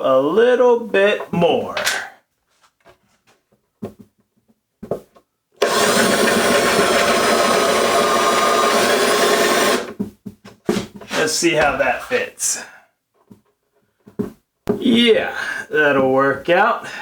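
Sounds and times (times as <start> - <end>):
drill boring into wood: 5.6 - 9.9.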